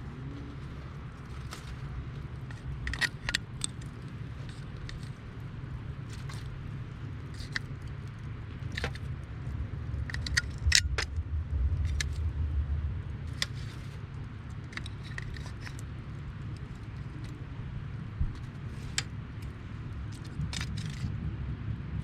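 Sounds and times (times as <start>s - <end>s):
campfire crackling and popping: 0.0s - 21.4s
low rumble: 4.1s - 18.7s.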